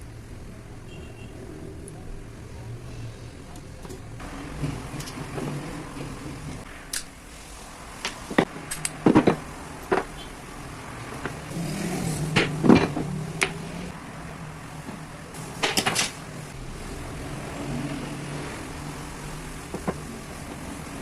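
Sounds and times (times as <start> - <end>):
clicks and knocks of tool parts: 8.0 - 10.2, 12.4 - 13.6, 15.6 - 16.3.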